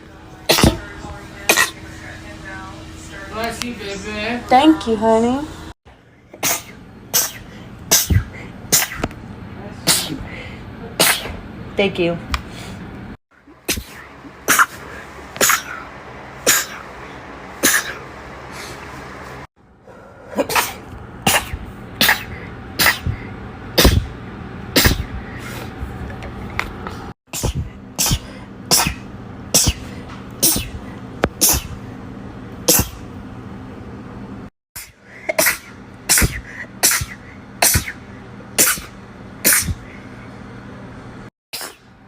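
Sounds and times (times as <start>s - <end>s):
woman sneezing: 0.5s - 0.8s, 6.4s - 9.1s, 9.8s - 10.2s, 20.4s - 24.1s, 24.8s - 25.2s, 27.4s - 30.8s, 31.4s - 31.8s, 32.7s - 33.0s, 34.8s - 38.0s, 38.6s - 39.8s.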